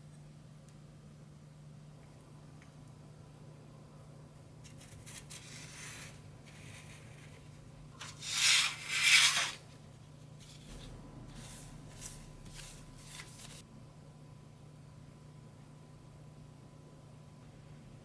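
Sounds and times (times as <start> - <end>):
squeegee scraping metal stencil: 8.0 - 9.7.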